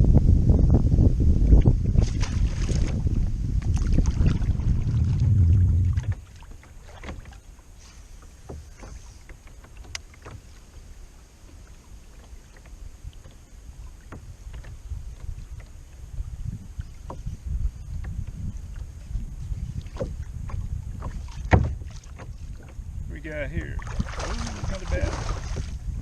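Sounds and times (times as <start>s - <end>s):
wind rumble on microphone: 0.0s - 26.0s
light clicks and knocks: 8.4s - 10.4s.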